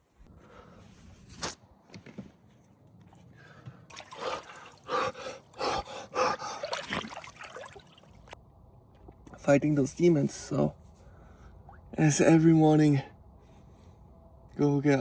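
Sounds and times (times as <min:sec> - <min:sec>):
sharp gasping breaths: 0:03.3 - 0:06.9
water sloshing and trickling: 0:03.9 - 0:09.4.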